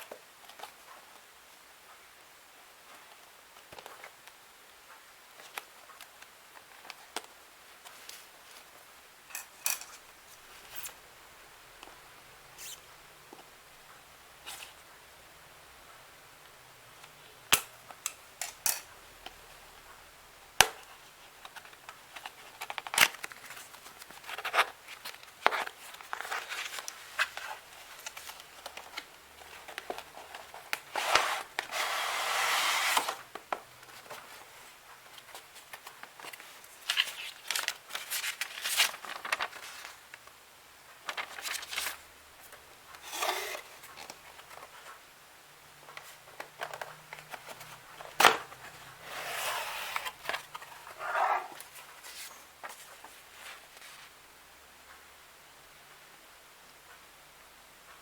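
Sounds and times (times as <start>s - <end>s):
packaging rustle: 35.2s - 40.0s.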